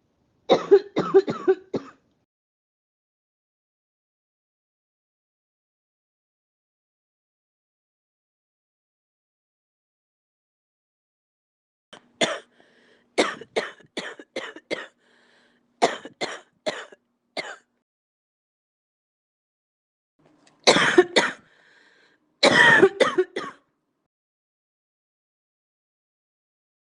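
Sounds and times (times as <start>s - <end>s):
person coughing: 0.5s - 2.0s, 12.2s - 12.5s, 13.2s - 15.0s, 15.8s - 17.7s, 20.6s - 21.5s, 22.4s - 23.6s.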